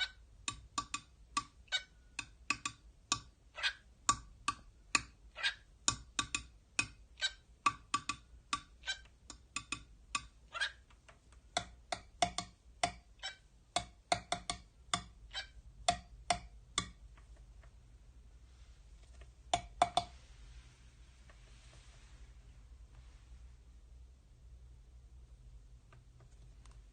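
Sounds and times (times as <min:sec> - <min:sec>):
bird tapping beak on hard surface: 0:00.5 - 0:01.5, 0:02.2 - 0:03.3, 0:05.9 - 0:07.0, 0:07.7 - 0:08.7, 0:09.3 - 0:10.3, 0:11.6 - 0:13.0, 0:13.8 - 0:15.1, 0:15.8 - 0:17.0, 0:19.5 - 0:20.1.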